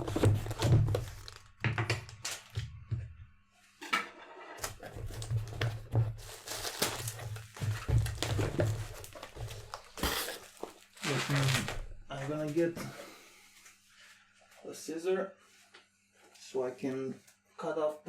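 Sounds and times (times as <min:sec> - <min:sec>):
bubble wrap rustling and crinkling: 0:00.0 - 0:02.6, 0:04.6 - 0:12.5.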